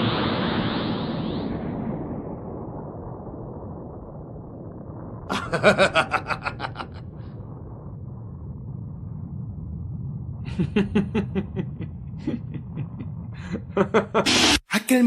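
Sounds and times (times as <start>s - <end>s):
low steady rumble: 1.3s - 14.2s
person laughing: 5.3s - 7.1s, 10.5s - 14.3s.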